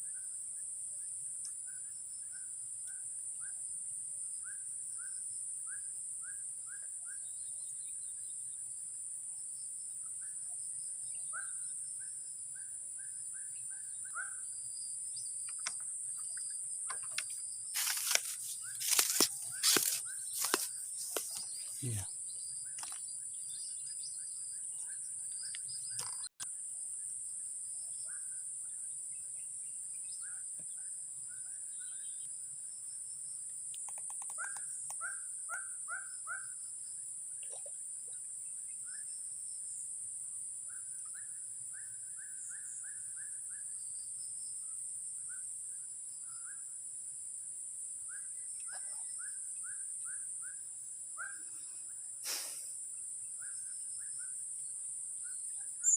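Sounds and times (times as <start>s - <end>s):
bird chirping: 9.5s - 26.5s, 27.8s - 39.3s, 53.0s - 55.9s.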